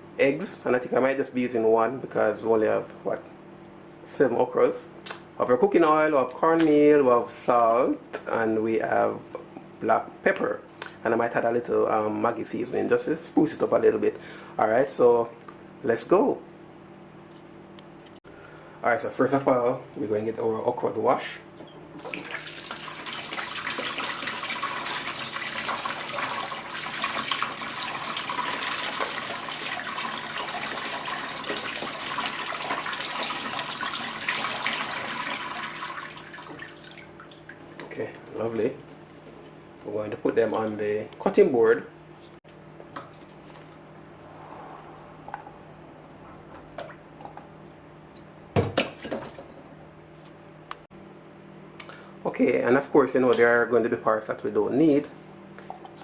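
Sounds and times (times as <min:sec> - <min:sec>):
tap water running into sink: 0:22.0 - 0:37.9
water splashing over pods: 0:22.0 - 0:38.9.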